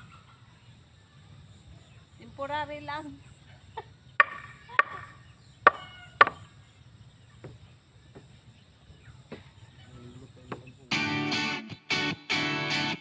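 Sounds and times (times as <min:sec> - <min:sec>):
guitar music: 0:10.9 - 0:13.0.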